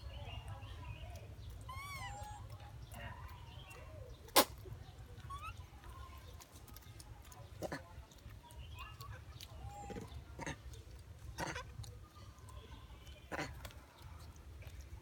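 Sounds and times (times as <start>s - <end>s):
monkey squeaky calls: 1.6s - 2.6s, 5.2s - 5.7s.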